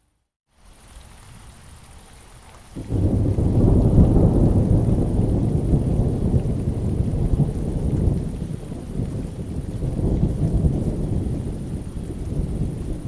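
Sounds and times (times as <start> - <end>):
rain falling: 0.5 - 13.0
thunder rumbling: 2.8 - 13.0.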